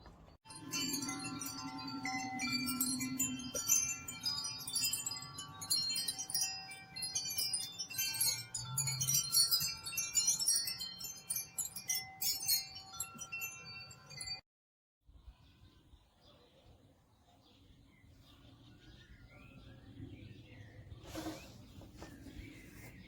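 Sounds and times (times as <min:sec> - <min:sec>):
chimes ringing: 0:00.5 - 0:14.4.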